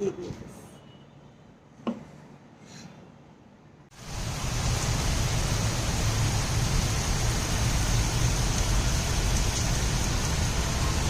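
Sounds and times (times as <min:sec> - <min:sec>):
heavy rain falling: 0:04.0 - 0:11.0.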